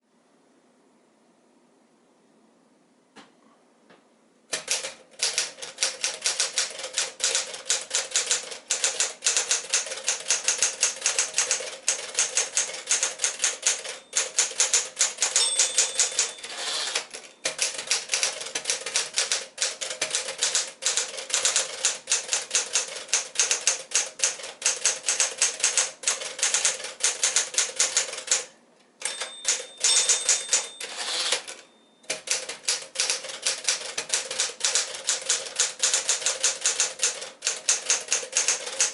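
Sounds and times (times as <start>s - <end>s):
typewriter keys clicking: 4.5s - 38.9s
typewriter bell ringing: 4.6s - 19.3s, 28.2s - 33.3s.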